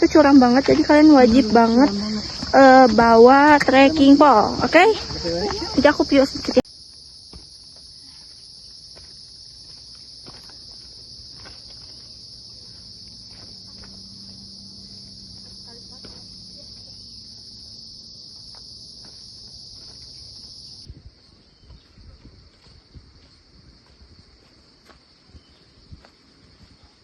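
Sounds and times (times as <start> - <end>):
insects droning: 0.0 - 27.0.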